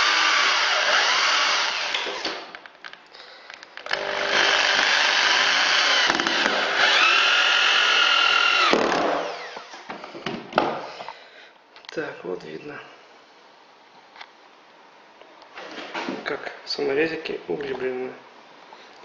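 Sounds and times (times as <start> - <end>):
electric drill whining: 0.0 - 2.5, 3.8 - 10.0.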